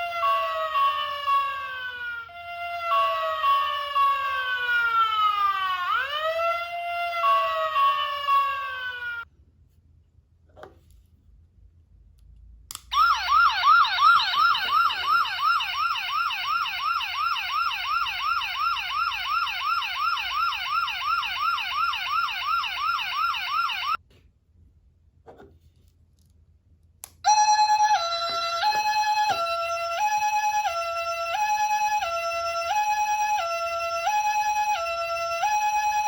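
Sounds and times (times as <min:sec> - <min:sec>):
electronic wailing siren: 0:00.0 - 0:09.2, 0:12.9 - 0:24.0, 0:27.3 - 0:36.0
two-tone electronic siren: 0:00.0 - 0:09.2, 0:12.9 - 0:24.0, 0:27.3 - 0:36.0
toy siren switch click: 0:12.7 - 0:13.4.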